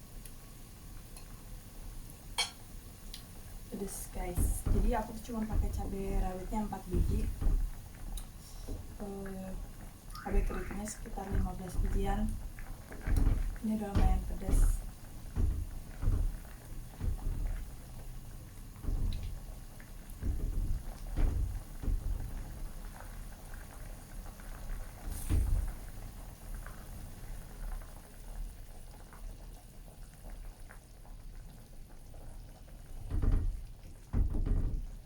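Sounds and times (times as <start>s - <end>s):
pot simmering: 0.0s - 35.0s
pot knocks and clicks: 2.4s - 2.6s.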